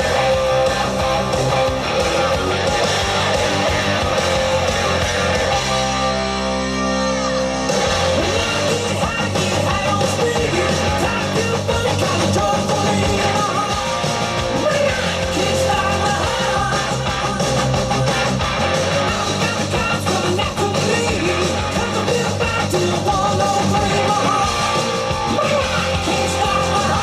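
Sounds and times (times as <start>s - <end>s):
rock music with guitars: 0.0s - 27.0s
person singing: 6.8s - 18.2s, 18.8s - 27.0s.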